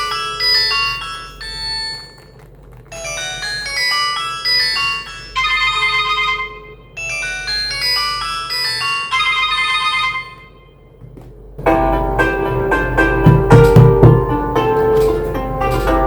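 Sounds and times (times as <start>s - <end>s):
phone ringtone melody: 0.0s - 10.9s.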